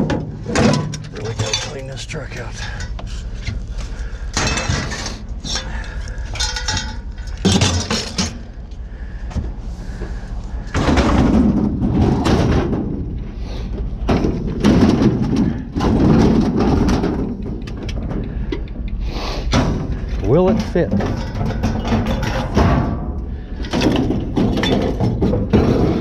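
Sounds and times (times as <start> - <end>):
scrap metal clattering: 0.0 - 8.6, 10.6 - 18.3, 19.4 - 26.0
scrap scraping and thudding: 9.4 - 17.5, 23.7 - 26.0.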